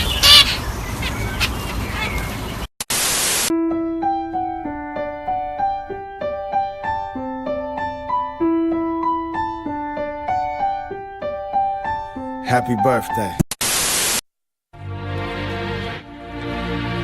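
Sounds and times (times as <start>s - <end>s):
birds chirping: 0.0s - 2.7s
piano melody: 3.5s - 13.4s.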